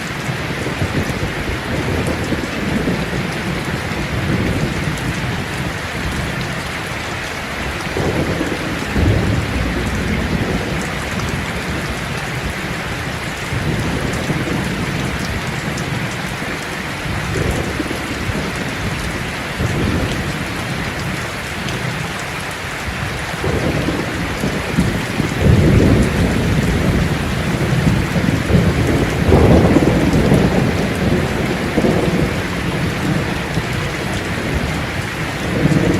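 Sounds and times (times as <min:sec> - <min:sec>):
heavy rain falling: 0:00.0 - 0:35.9
low rolls of thunder: 0:07.8 - 0:16.0, 0:23.0 - 0:35.9.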